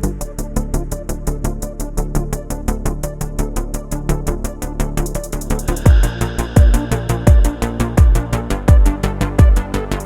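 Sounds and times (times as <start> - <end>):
electronic music: 0.0 - 10.0
synth bass: 0.0 - 10.0
ticking hi-hats: 5.0 - 10.0.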